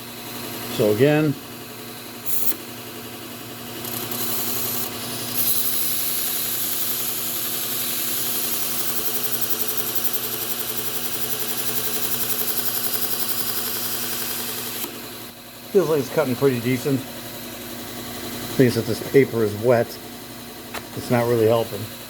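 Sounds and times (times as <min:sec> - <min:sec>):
motor hum: 0:00.0 - 0:22.0
steel grinding on abrasive belt: 0:03.8 - 0:14.9.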